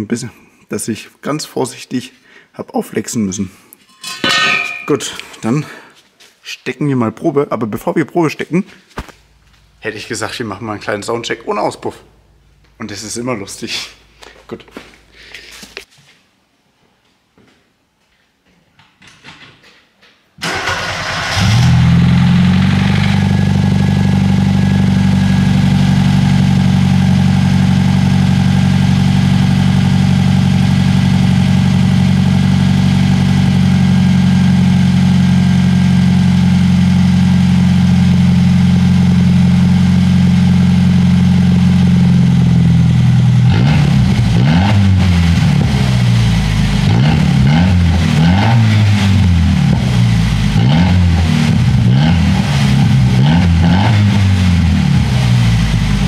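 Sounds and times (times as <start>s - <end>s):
car engine idling and revving: 20.4s - 56.0s.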